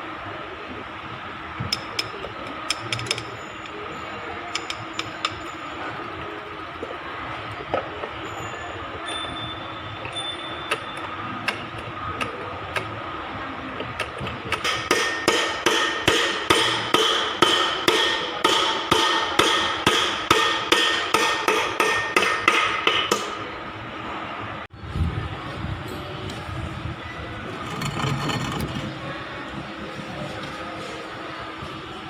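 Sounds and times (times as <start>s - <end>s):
hammer striking metal: 14.5s - 23.5s.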